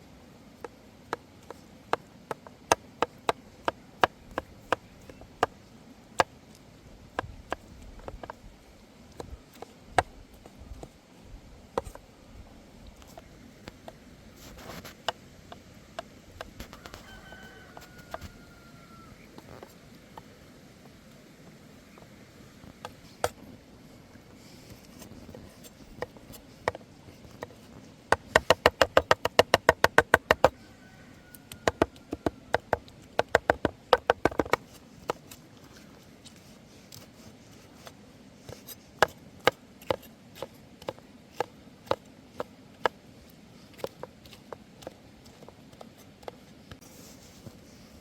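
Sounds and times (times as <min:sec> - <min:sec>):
knife chopping on wooden board: 0:28.1 - 0:30.6, 0:31.5 - 0:35.2.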